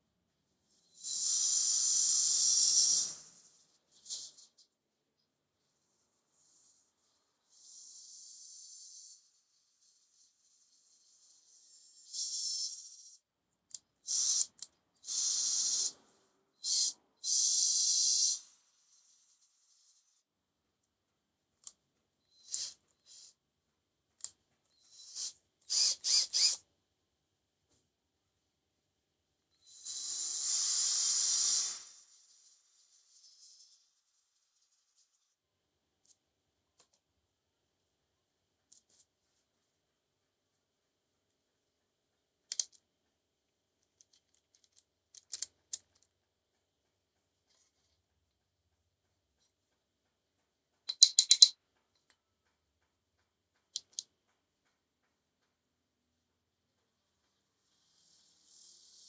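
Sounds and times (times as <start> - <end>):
small hard parts clicking: 42.2 - 43.2, 43.8 - 55.7
plastic housing clicks: 44.0 - 46.1, 50.9 - 51.5.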